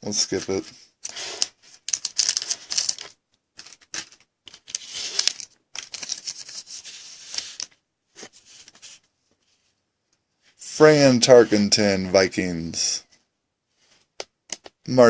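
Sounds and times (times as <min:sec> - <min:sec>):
card pack wrapper crinkling: 0:01.1 - 0:07.7.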